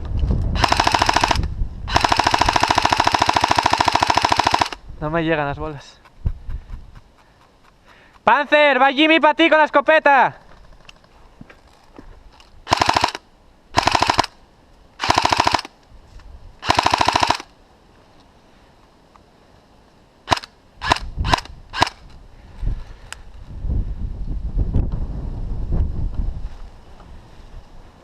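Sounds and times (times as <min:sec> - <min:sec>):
airsoft gun firing bursts: 0:00.6 - 0:04.8, 0:12.7 - 0:13.2, 0:13.8 - 0:14.4, 0:15.0 - 0:15.7, 0:16.6 - 0:17.5, 0:20.3 - 0:22.0
airsoft gun single shots: 0:20.3 - 0:22.0.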